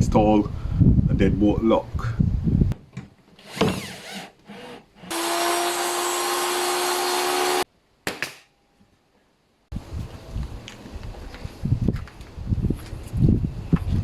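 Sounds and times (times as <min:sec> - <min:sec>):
power drill boring into wood: 0:03.4 - 0:07.6.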